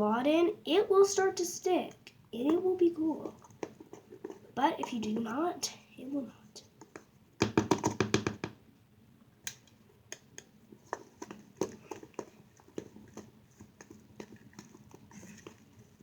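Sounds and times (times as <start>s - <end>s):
hands kneading slime dough: 1.2s - 8.6s, 9.5s - 16.0s
wet clicks and squelches: 9.4s - 16.0s.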